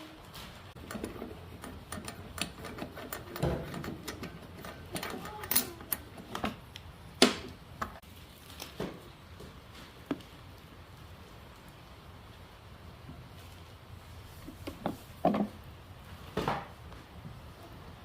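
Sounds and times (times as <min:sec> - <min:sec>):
hand tools and metal parts clattering: 0:00.3 - 0:08.0.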